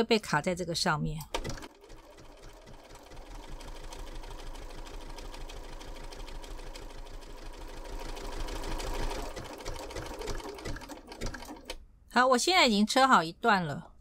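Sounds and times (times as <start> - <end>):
sewing machine stitching: 1.1 - 11.8.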